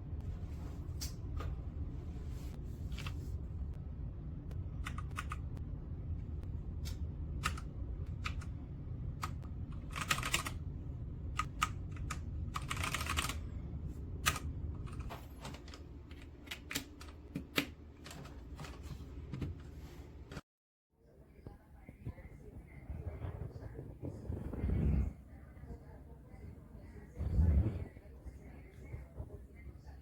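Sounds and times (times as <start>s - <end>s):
low steady hum: 0.0s - 20.4s, 21.0s - 30.0s
mechanical keyboard clicks: 9.2s - 10.6s.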